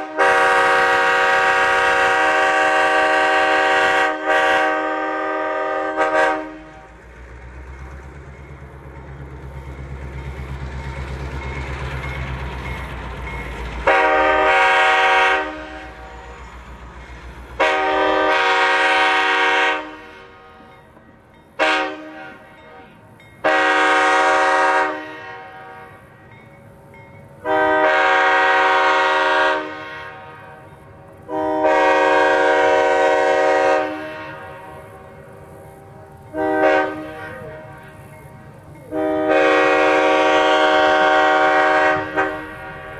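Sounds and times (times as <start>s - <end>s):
train air horn blasts: 0.0s - 6.9s, 13.8s - 16.4s, 17.5s - 20.7s, 21.6s - 26.1s, 27.4s - 35.2s, 36.3s - 38.1s, 38.9s - 42.9s.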